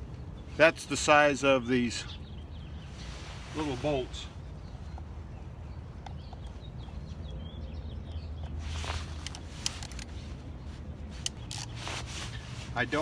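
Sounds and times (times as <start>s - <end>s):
hand tools clicking and scraping: 8.7s - 10.2s.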